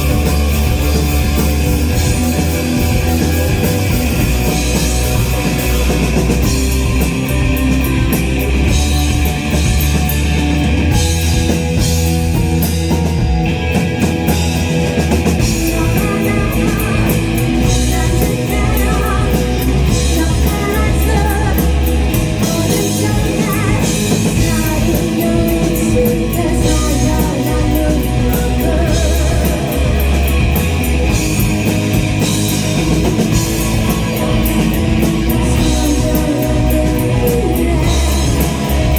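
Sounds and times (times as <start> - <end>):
rock band playing live: 0.0 - 38.9
person singing: 15.6 - 30.4, 35.2 - 38.9.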